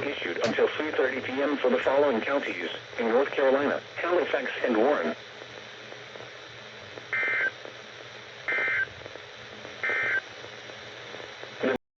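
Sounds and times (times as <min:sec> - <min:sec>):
faint radio hiss: 0:00.0 - 0:11.8
two-tone digital data bursts: 0:07.1 - 0:07.6, 0:08.5 - 0:08.9, 0:09.8 - 0:10.2.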